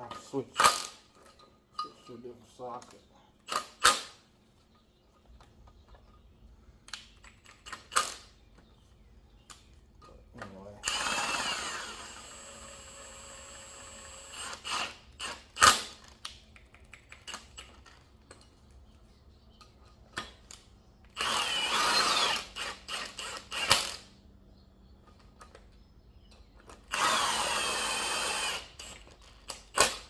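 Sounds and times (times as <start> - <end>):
impact wrench whining: 10.8 - 16.0, 21.1 - 24.1, 26.6 - 30.0.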